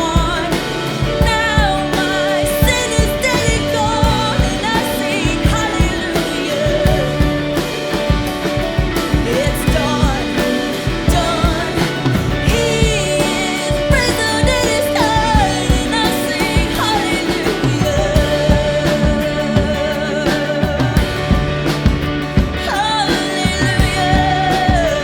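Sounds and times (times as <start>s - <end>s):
person singing: 0.0s - 25.0s
rock band playing: 0.0s - 25.0s.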